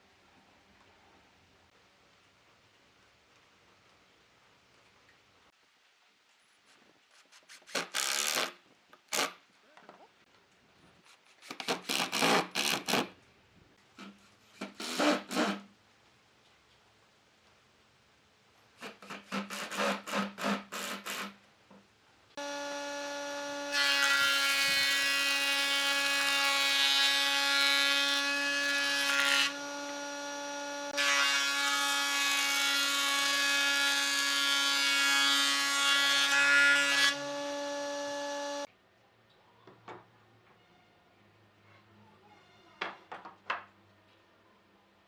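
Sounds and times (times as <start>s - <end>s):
electric power tool motor: 22.4s - 31.0s, 37.1s - 38.7s.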